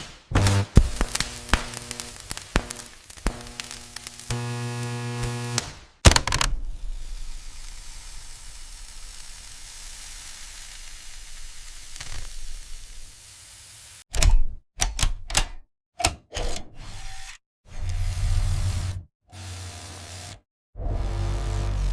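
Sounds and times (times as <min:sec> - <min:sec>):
electric hum: 0:00.3 - 0:05.7
sizzling hiss: 0:00.4 - 0:05.6, 0:06.6 - 0:14.0.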